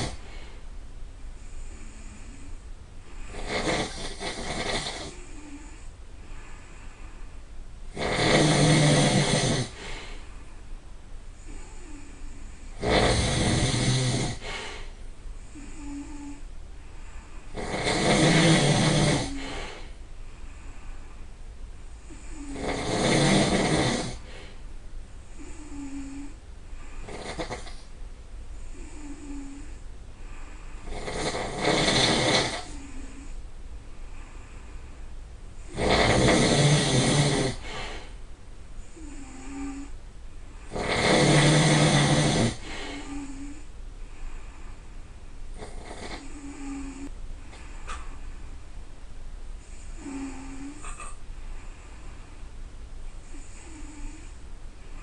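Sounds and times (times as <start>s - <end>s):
person snoring: 0.0s - 0.5s, 1.4s - 7.0s, 7.9s - 10.2s, 11.4s - 20.0s, 22.0s - 24.6s, 25.3s - 27.9s, 28.6s - 33.4s, 35.6s - 38.2s, 38.8s - 40.0s, 40.6s - 44.6s, 45.5s - 48.0s, 49.6s - 51.2s, 53.2s - 55.0s.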